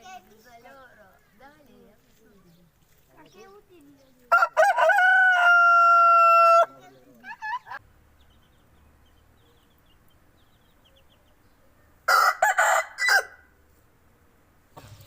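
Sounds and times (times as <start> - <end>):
rooster crowing: 4.3 - 6.8, 12.1 - 13.5.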